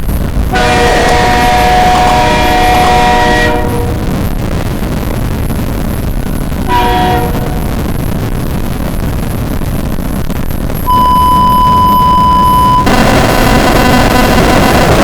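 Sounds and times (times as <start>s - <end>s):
passing train rumbling: 0.0s - 15.0s
train horn blast: 0.5s - 4.5s, 6.6s - 7.9s.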